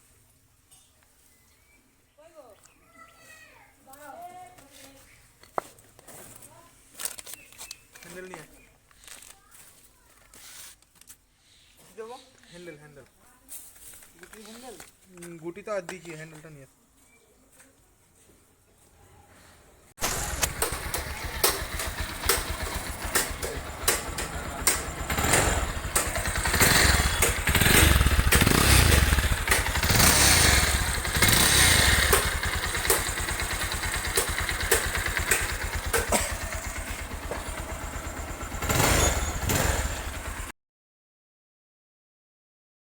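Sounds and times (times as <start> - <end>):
motorcycle engine revving and idling: 20.0 - 40.5.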